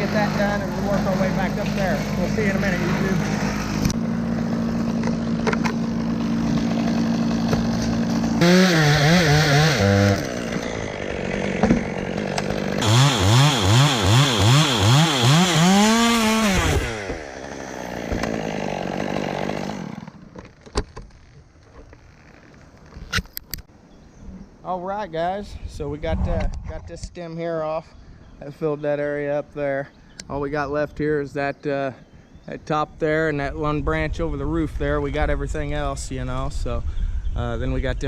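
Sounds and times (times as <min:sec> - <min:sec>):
chainsaw revving: 0:00.0 - 0:20.4.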